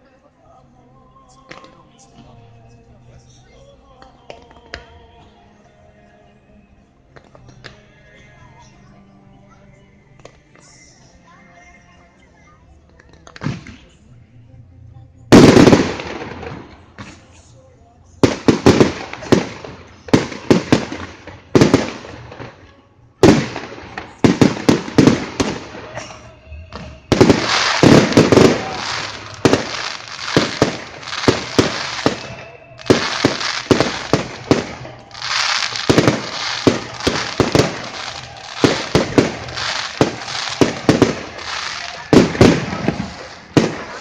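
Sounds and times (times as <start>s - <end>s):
dense firework crackling: 15.3s - 17.2s, 18.2s - 22.4s, 23.2s - 26.0s, 26.8s - 44.0s.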